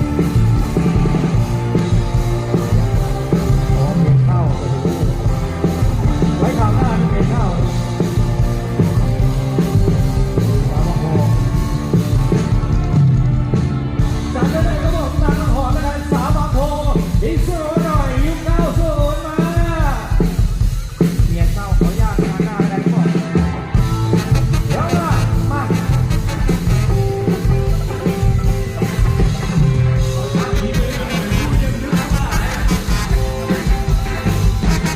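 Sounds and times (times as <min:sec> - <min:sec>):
live dance band playing: 0:00.0 - 0:34.9
lead melody with bending pitch: 0:23.0 - 0:34.9.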